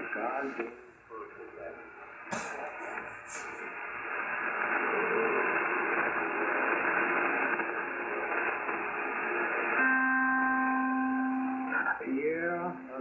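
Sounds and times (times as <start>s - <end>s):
radio receiver hiss: 0.0s - 9.9s, 10.8s - 13.0s.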